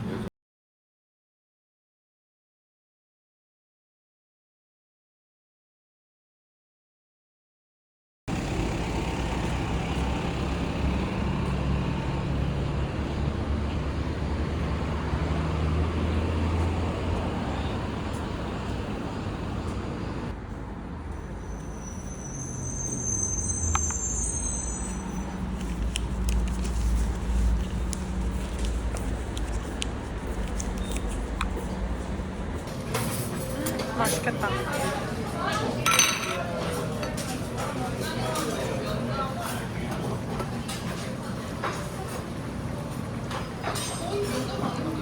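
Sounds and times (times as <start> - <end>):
car road and engine noise: 8.3 - 33.5.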